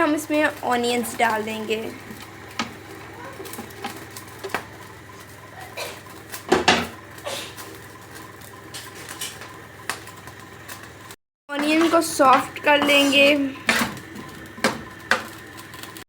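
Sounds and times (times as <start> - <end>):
spoon scraping a frying pan: 11.6 - 15.4.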